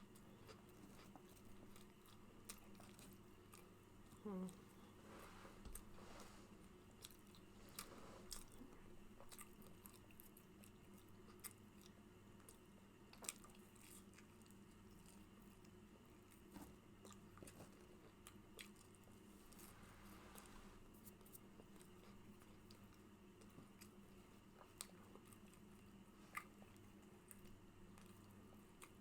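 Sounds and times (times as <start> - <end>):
faint room hum: 0.0 - 29.0
chewing and lip smacking: 0.1 - 4.9, 6.9 - 19.7, 21.0 - 29.0.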